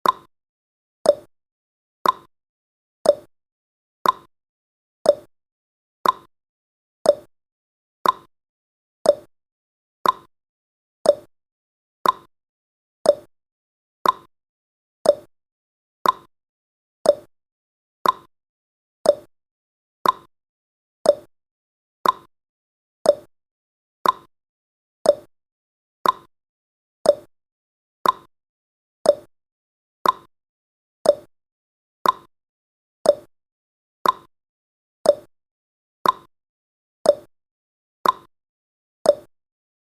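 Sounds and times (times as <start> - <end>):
clock ticking: 2.0 - 2.3, 4.0 - 4.3, 6.0 - 6.3, 8.0 - 8.3, 10.0 - 10.3, 14.0 - 14.3, 15.1 - 15.3, 16.0 - 16.3, 17.1 - 17.3, 18.0 - 18.3, 20.0 - 20.3, 21.1 - 21.3, 22.0 - 22.3, 24.0 - 24.3, 26.0 - 26.3, 28.0 - 28.3, 29.1 - 29.3, 30.0 - 30.3, 31.1 - 31.3, 32.0 - 32.3, 33.1 - 33.3, 34.0 - 34.3, 35.1 - 35.3, 36.0 - 36.3, 38.0 - 38.3, 39.1 - 39.3.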